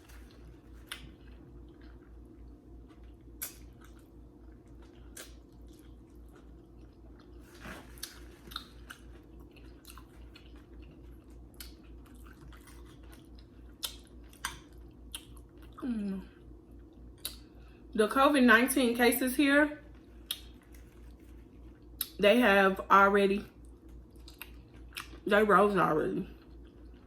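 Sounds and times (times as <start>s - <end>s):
person chewing food: 0.0s - 15.8s, 16.6s - 17.8s, 19.9s - 22.2s, 23.6s - 25.2s, 26.3s - 27.0s.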